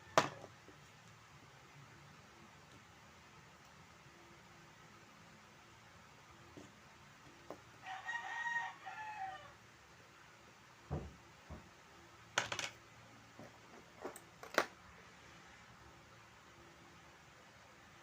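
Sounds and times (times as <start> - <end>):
rooster crowing: 7.8 - 9.6.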